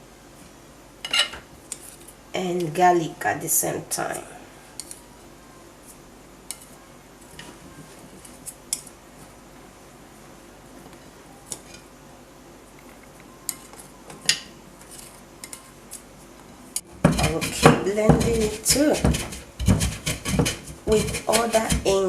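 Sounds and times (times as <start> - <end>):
utensils knocking against bowl: 17.0 - 22.0.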